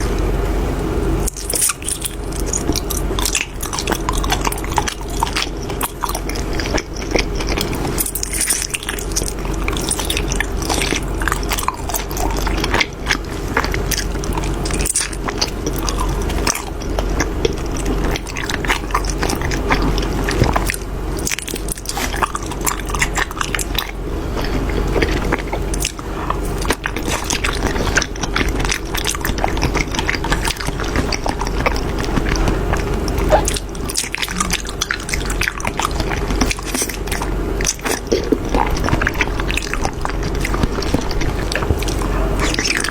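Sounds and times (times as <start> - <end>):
chewing and biting: 0.0 - 42.9
sticky wet clicks: 1.2 - 42.9.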